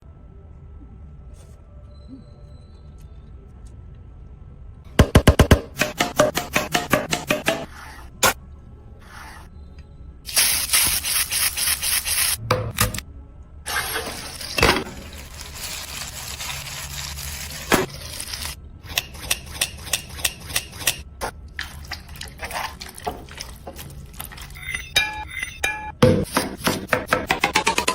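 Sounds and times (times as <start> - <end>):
close chewing and mouth sounds: 21.2 - 24.6.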